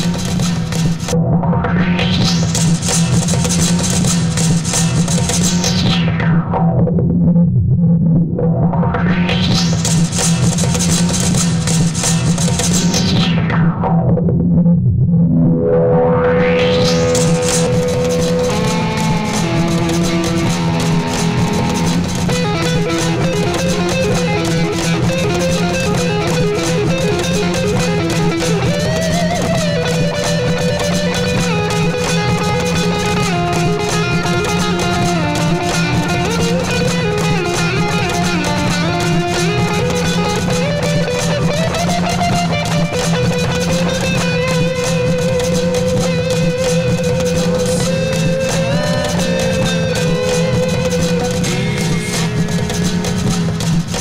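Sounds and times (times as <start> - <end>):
looped bass line: 0.0 - 54.0
plucked guitar figure: 15.1 - 54.0
percussive taps: 16.8 - 54.0.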